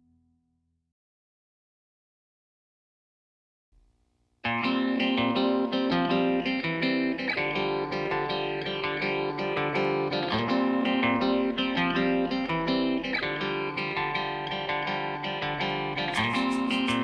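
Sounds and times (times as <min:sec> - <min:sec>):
background guitar music: 0:04.4 - 0:17.0.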